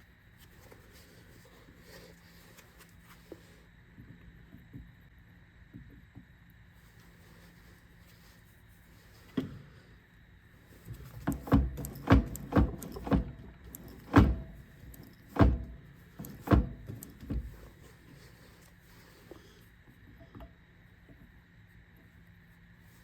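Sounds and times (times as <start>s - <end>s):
drill press hum: 10.7s - 18.3s
sharp knocks and clunks: 11.0s - 17.6s.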